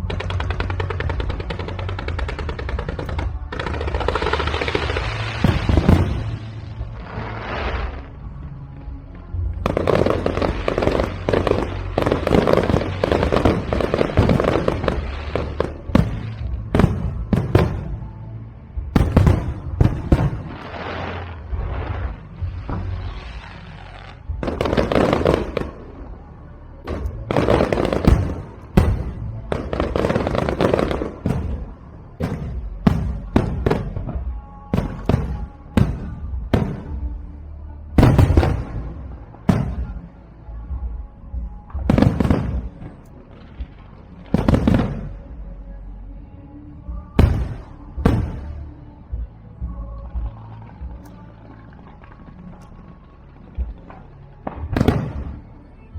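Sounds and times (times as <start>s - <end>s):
fireworks bangs and booms: 0.0s - 8.4s, 9.4s - 26.1s, 26.8s - 37.4s, 38.0s - 45.4s, 47.0s - 51.0s, 53.6s - 55.6s
fireworks crackling: 0.0s - 8.4s, 9.5s - 18.2s, 18.9s - 26.2s, 26.8s - 37.2s, 38.0s - 40.2s.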